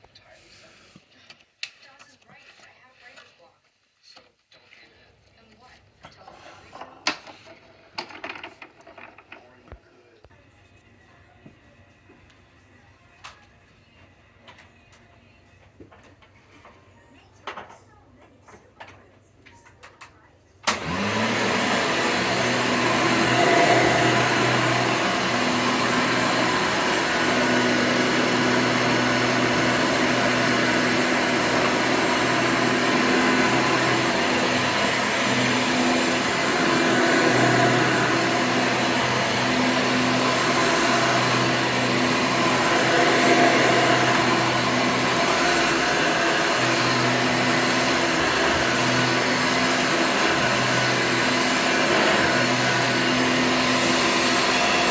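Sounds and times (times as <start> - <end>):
vacuum cleaner running: 20.6 - 54.9.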